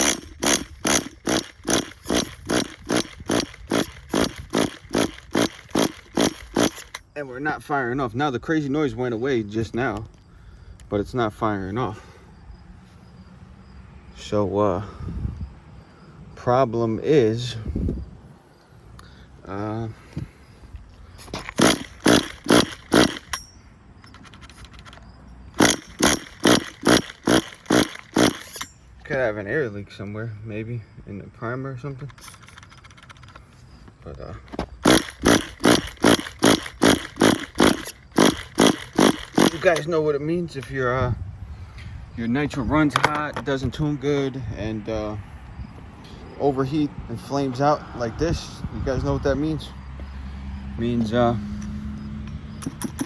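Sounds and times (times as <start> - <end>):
rc car engine pulsing: 0.0 - 7.0, 21.4 - 23.4, 24.0 - 28.7, 34.8 - 39.9.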